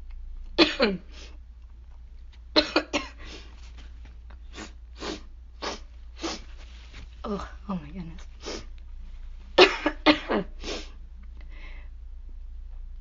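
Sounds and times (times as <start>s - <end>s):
woman coughing: 0.6s - 1.1s, 2.6s - 3.2s, 9.6s - 10.6s.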